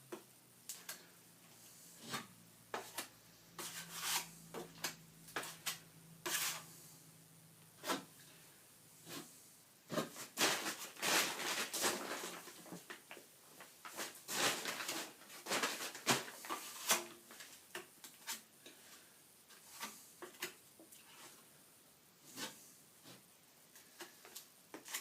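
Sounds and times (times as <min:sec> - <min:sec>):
trowel scraping wet plaster: 0:05.4 - 0:06.7.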